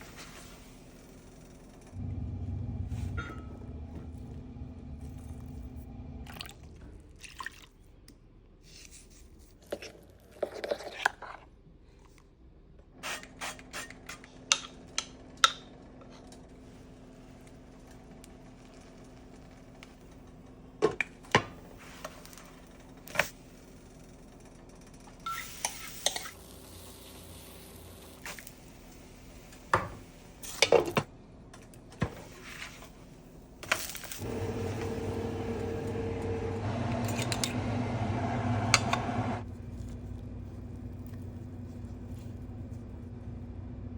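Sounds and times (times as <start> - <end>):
kitchen utensils clinking: 34.2 - 39.4
faint steady hum: 34.2 - 43.9.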